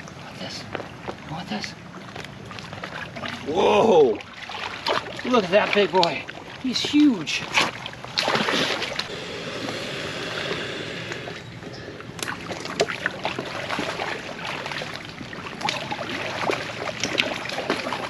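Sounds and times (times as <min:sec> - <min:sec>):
water sloshing and lapping: 0:00.0 - 0:18.0
short splashes and clicks: 0:04.1 - 0:09.8, 0:10.4 - 0:18.0.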